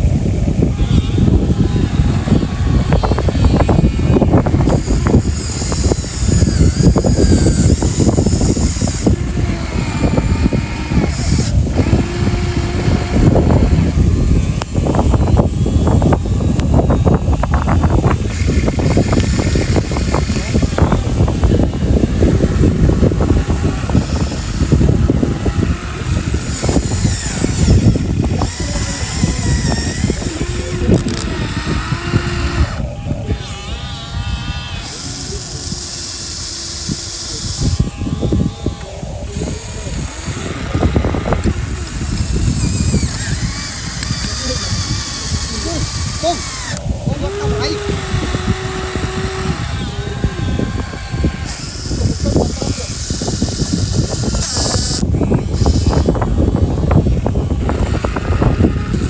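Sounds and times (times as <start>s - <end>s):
hydraulic pump whine: 0.0s - 59.0s
model excavator rumble: 0.0s - 59.0s
small motor running: 0.0s - 59.0s.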